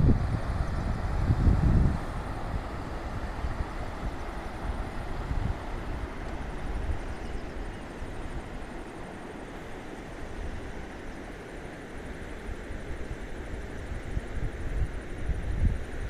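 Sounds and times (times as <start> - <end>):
wind buffeting microphone: 0.0 - 8.7, 13.8 - 16.0
steady rushing noise: 0.0 - 16.0.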